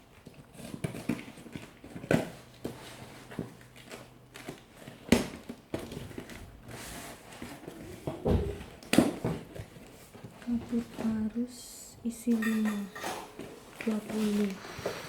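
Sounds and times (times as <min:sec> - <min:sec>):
packaging rustling: 0:13.2 - 0:14.8.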